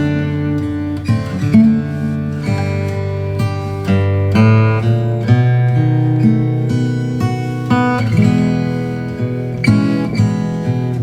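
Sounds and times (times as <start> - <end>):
acoustic guitar music: 0.0 - 11.0.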